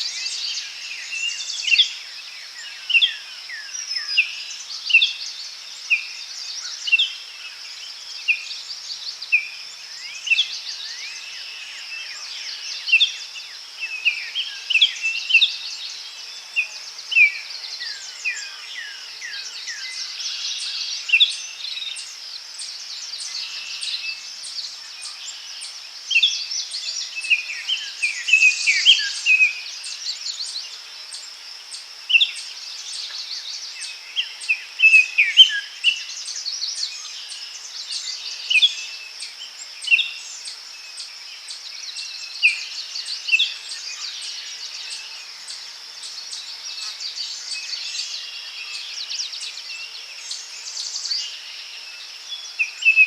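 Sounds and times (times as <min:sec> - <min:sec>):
high-pitched insect chorus: 0:00.0 - 0:53.0
songbirds singing: 0:00.0 - 0:53.0.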